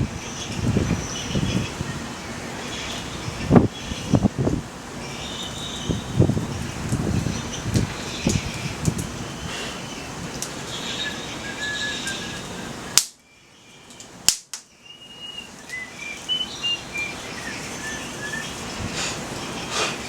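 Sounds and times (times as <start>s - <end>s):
wind rustling hiss: 0.0s - 20.0s
bird whistling song: 10.7s - 14.0s, 14.6s - 19.9s
sharp cracks: 13.0s - 13.2s, 14.0s - 14.7s.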